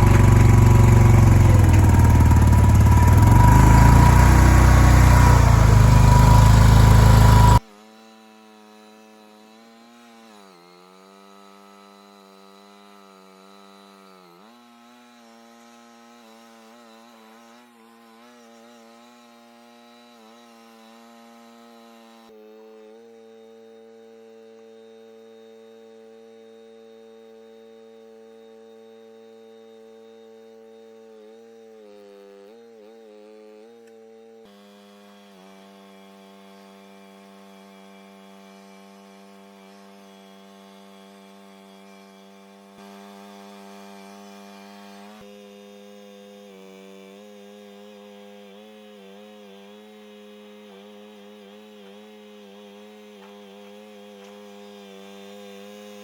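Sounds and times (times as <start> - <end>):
skid steer engine running: 0.0 - 7.6, 48.2 - 56.0.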